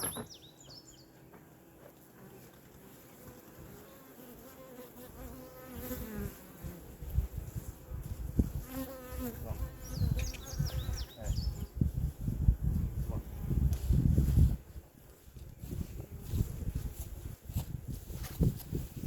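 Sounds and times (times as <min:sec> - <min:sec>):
bird chirping: 0:00.0 - 0:01.2, 0:09.8 - 0:11.7
honeybees buzzing: 0:00.0 - 0:17.9.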